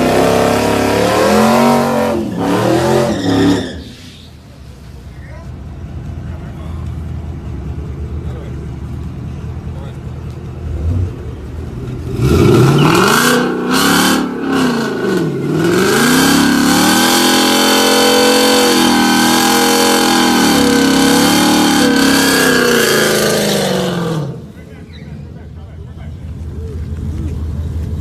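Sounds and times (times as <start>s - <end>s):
drag racing engines revving: 0.0s - 5.0s, 10.6s - 28.0s.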